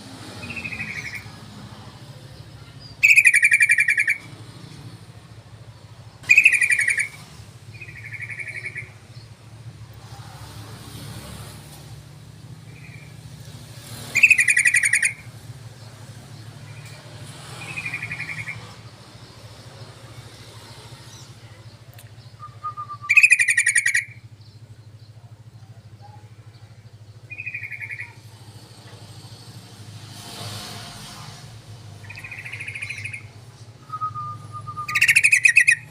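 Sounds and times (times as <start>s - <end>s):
bulbul chattering calls: 0.4s - 1.3s, 2.4s - 4.3s, 6.2s - 9.2s, 14.1s - 15.9s, 17.6s - 19.4s, 21.1s - 28.4s, 32.0s - 35.9s.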